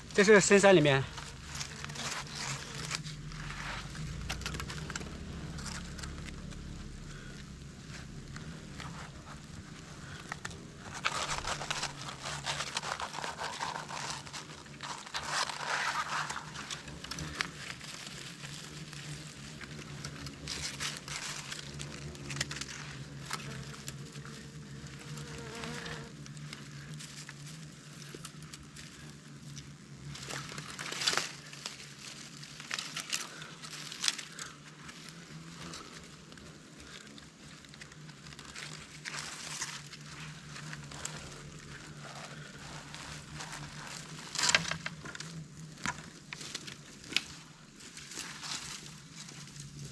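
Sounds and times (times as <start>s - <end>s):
hornets buzzing: 0.0s - 26.9s
faint low hum: 0.0s - 49.9s
clicks and crackles: 0.1s - 24.4s, 28.0s - 49.9s.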